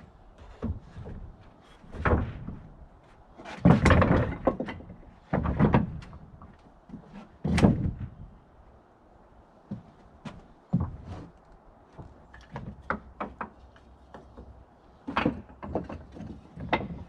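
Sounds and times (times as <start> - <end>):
wooden boards thudding on a pile: 0.4 - 8.3, 15.1 - 17.0.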